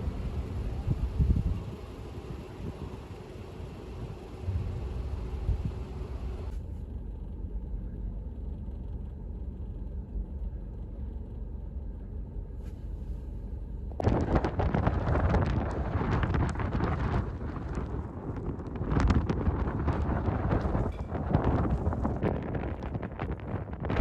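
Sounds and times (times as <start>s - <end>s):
blizzard wind buffeting microphone: 0.0s - 9.0s, 12.8s - 24.0s
rushing wind gust: 14.0s - 24.0s.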